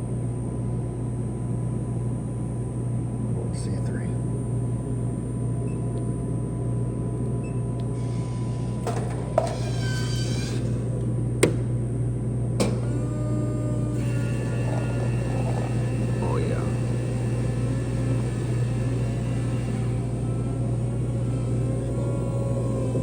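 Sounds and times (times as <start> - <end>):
vending machine hum: 0.0 - 23.0
machine whirring: 7.8 - 11.7, 12.6 - 23.0.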